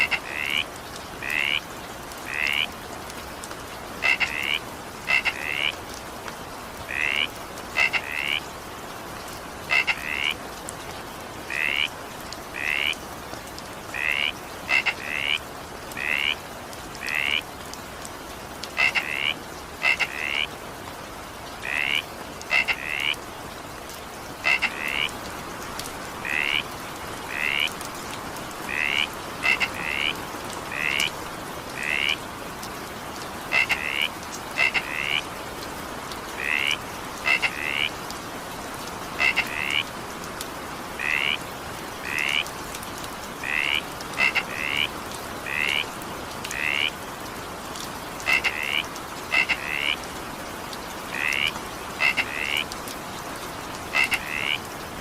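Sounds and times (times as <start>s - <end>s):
frog croaking: 0.0s - 1.6s, 2.2s - 2.7s, 4.0s - 5.8s, 6.9s - 8.4s, 9.7s - 10.4s, 11.5s - 13.0s, 13.9s - 16.4s, 17.0s - 17.4s, 18.8s - 20.5s, 21.6s - 23.2s, 24.4s - 25.2s, 26.2s - 27.8s, 28.6s - 32.2s, 33.5s - 35.3s, 36.4s - 38.0s, 39.2s - 39.9s, 41.0s - 41.4s, 42.0s - 42.5s, 43.4s - 45.9s, 46.5s - 47.0s, 48.2s - 50.0s, 51.1s - 52.7s, 53.9s - 54.7s
rain hissing: 0.0s - 55.0s.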